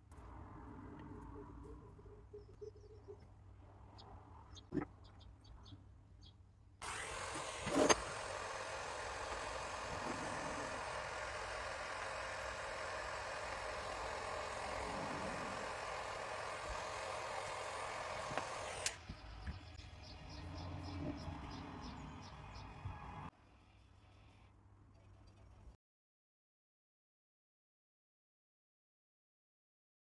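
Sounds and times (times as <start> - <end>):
gas torch flame hissing: 6.8 - 19.0
torch ignition click: 6.8 - 19.1.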